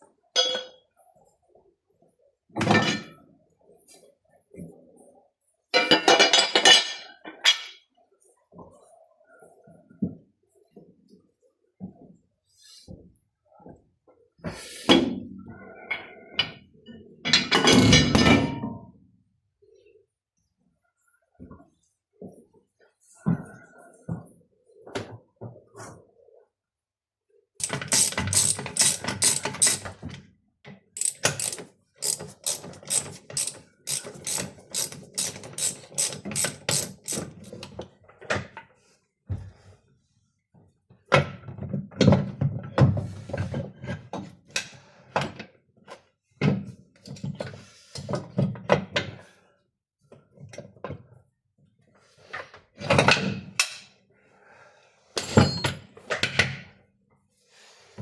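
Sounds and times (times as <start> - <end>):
gear shifter ratcheting clicks: 27.6 - 29.9, 31.0 - 37.7.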